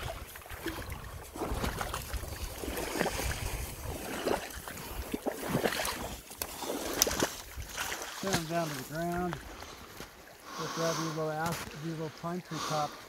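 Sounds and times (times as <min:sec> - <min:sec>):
wind rumble on microphone: 0:00.0 - 0:05.2.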